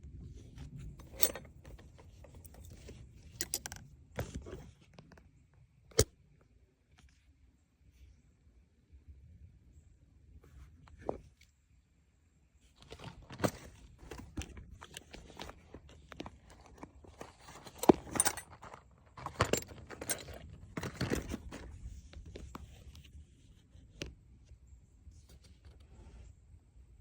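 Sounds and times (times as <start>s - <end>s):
hand tools clinking and knocking: 1.0s - 3.8s, 12.9s - 21.8s.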